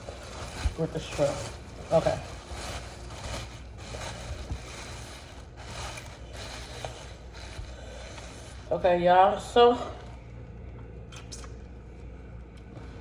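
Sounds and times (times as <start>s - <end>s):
noodles being stirred: 0.0s - 10.0s
steady low hum: 0.0s - 13.0s.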